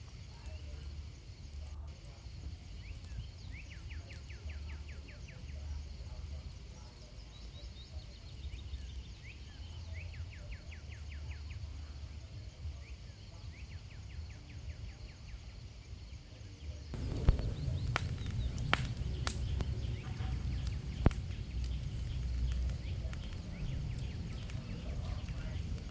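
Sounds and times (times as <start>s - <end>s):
forest ambience: 0.0s - 25.9s
rapid high falling chirps: 17.0s - 25.9s
sharp snaps: 17.0s - 25.9s.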